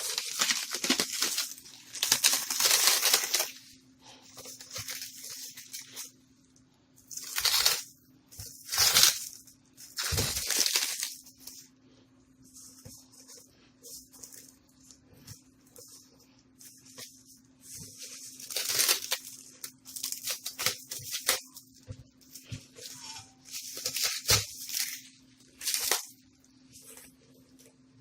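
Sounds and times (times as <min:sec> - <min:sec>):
packing material crinkling: 0:00.0 - 0:06.2, 0:07.0 - 0:11.7, 0:12.5 - 0:26.2
faint steady hum: 0:00.0 - 0:28.0.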